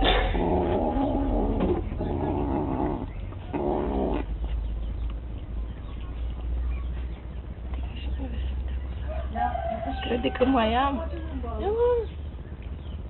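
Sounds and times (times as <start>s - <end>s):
cat growling: 0.0s - 4.4s.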